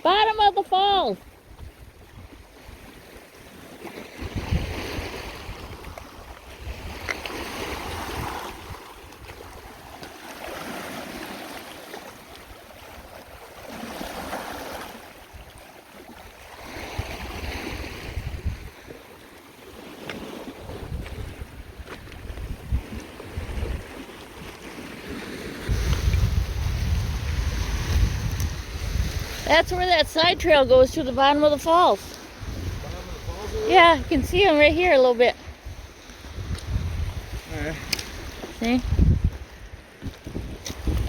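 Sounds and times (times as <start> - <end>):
waves on rocky shore: 0.0 - 41.0
wind buffeting microphone: 4.1 - 9.8, 16.6 - 19.0, 20.4 - 41.0.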